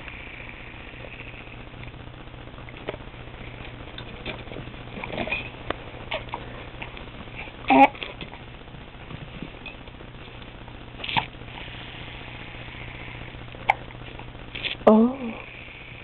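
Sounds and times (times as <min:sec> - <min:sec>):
person hiccuping: 0:07.7 - 0:08.0.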